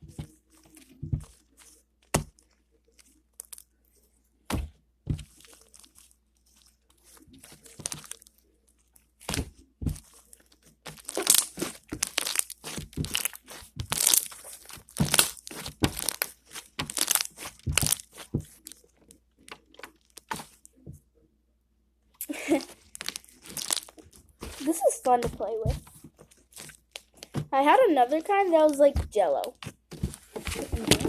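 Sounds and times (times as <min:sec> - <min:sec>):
slime squeezed by hand: 0:10.9 - 0:18.8, 0:22.6 - 0:25.8.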